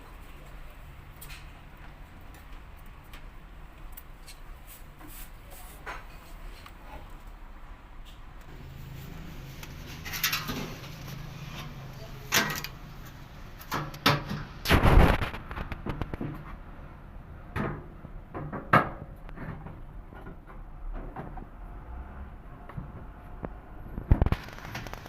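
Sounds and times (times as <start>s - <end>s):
knocks and clunks of machine parts: 13.6s - 14.6s, 17.5s - 21.5s.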